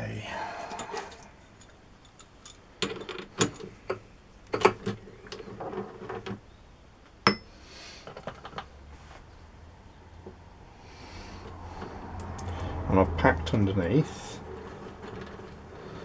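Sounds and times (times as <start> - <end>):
metal clinks and knocks: 0.5 - 6.3.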